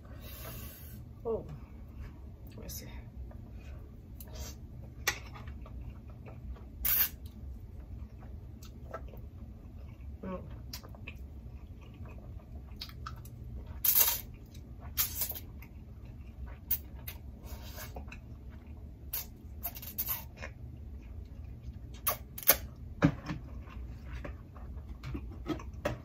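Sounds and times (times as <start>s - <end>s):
eating seafood clicks and cracks: 8.1s - 17.2s.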